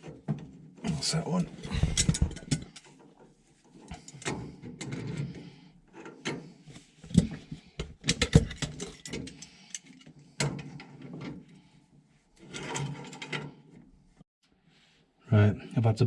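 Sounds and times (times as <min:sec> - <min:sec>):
metal pipe fittings and tools clanking: 0:01.5 - 0:11.7, 0:12.4 - 0:13.6.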